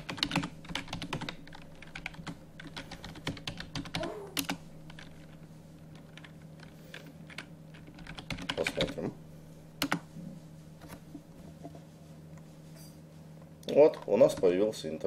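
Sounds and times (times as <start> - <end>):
computer keyboard typing: 0.0 - 9.1, 9.8 - 10.0.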